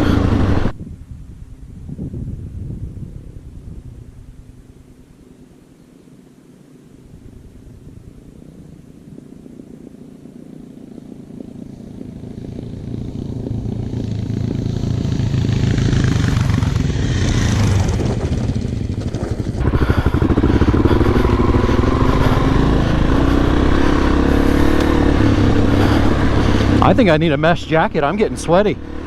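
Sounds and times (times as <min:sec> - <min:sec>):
dirt bike engine: 0:00.0 - 0:00.7, 0:07.2 - 0:29.0.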